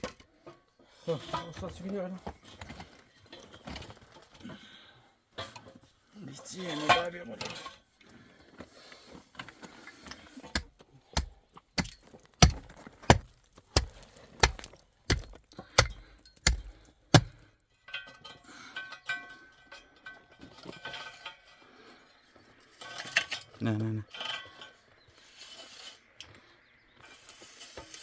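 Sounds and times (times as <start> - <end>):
clinks and scraping: 0.0 - 4.6, 5.3 - 8.0, 8.6 - 28.0
hand tool striking masonry: 10.4 - 18.2.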